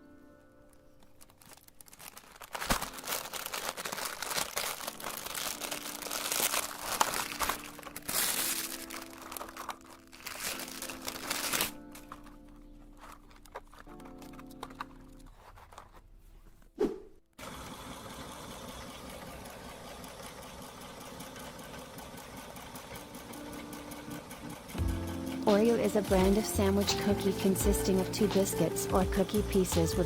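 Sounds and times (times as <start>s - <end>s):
background music: 0.0s - 16.2s, 23.3s - 30.0s
loud crinkling and crackling: 0.6s - 16.7s, 22.8s - 29.3s.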